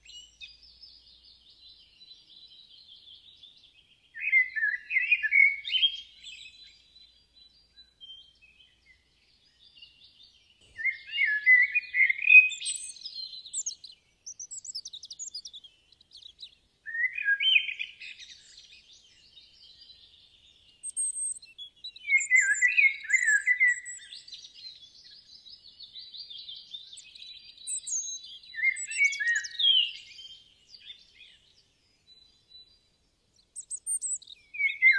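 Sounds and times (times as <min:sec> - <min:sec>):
birds twittering: 0:08.8 - 0:32.7, 0:33.4 - 0:34.9.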